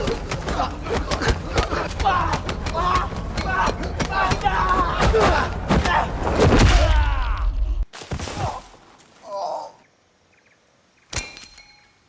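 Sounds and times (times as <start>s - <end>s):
man's strained cries: 0.0s - 6.2s
grunts or groans: 0.0s - 7.8s.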